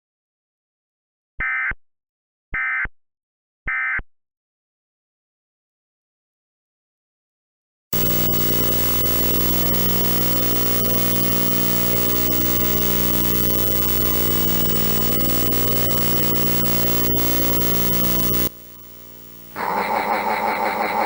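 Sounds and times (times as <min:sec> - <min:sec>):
harsh electronic buzz: 0:08.0 - 0:21.0.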